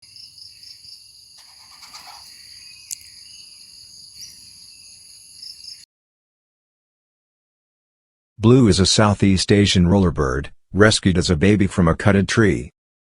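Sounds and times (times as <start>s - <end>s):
insects droning: 0.0s - 5.8s.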